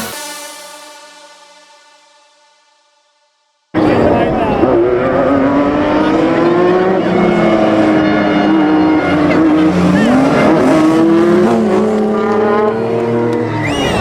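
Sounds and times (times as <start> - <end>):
car engine at high revs: 3.8 - 14.0.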